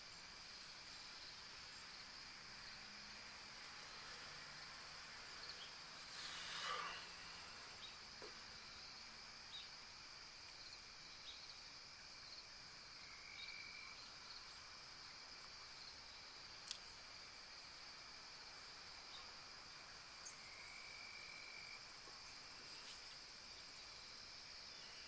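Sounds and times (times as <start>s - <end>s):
faint high hiss: 0.0s - 25.0s
faint ticks: 16.6s - 17.0s.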